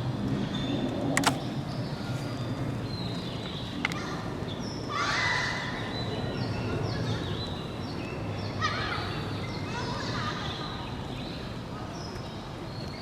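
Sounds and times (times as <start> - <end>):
sharp click: 1.2 - 1.5.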